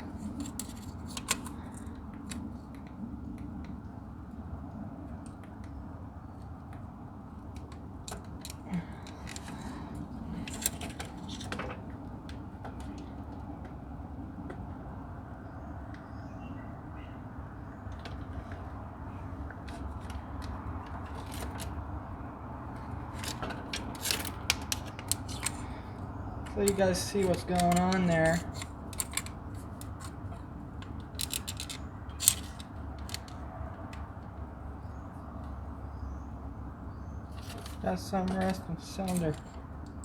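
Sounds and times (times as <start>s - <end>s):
inspection camera clicks and scrapes: 0.0s - 2.6s, 8.1s - 11.8s, 19.7s - 21.8s, 23.0s - 33.7s.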